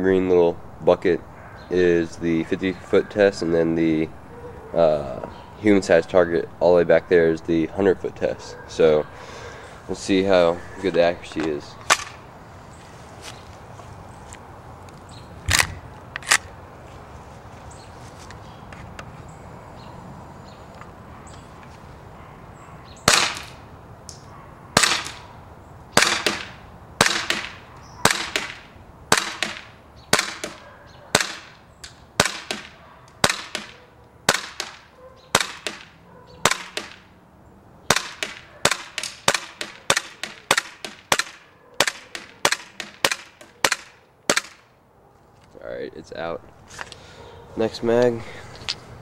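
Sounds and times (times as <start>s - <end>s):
airsoft pistol shots: 11.9s - 12.2s, 23.0s - 23.6s, 24.8s - 25.3s, 26.0s - 31.6s, 32.2s - 37.0s, 37.9s - 44.6s.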